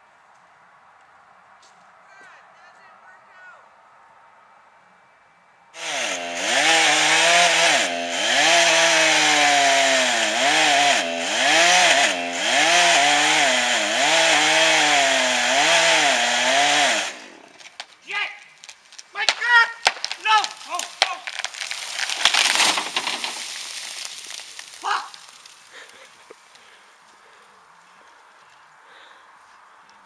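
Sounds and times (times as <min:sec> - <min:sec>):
chainsaw cutting wood: 0:05.8 - 0:18.0, 0:18.6 - 0:26.8
sharp wood cracks: 0:15.6 - 0:27.4.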